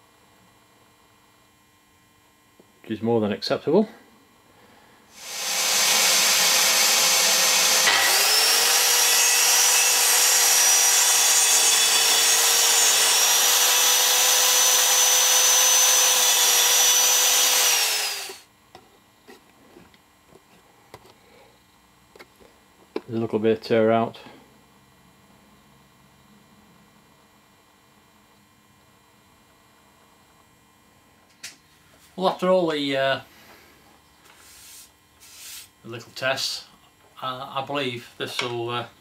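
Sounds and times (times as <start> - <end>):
plunge saw cutting wood: 5.1 - 18.4.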